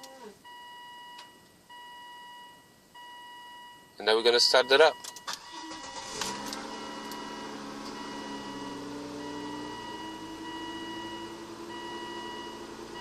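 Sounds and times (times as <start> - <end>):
car engine cranking and idling: 4.2 - 13.0.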